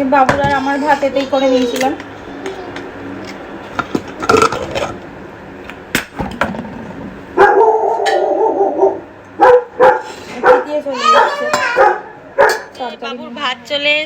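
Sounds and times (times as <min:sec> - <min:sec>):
dog yelping: 0:07.4 - 0:12.7
dog whining: 0:11.0 - 0:12.6.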